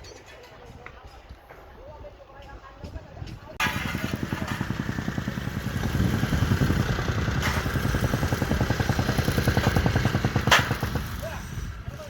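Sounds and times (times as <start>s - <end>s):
engine running steadily: 3.6s - 12.0s.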